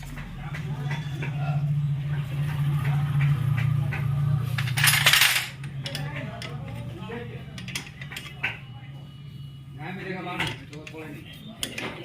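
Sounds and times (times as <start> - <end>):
metal parts clinking: 4.6 - 6.6.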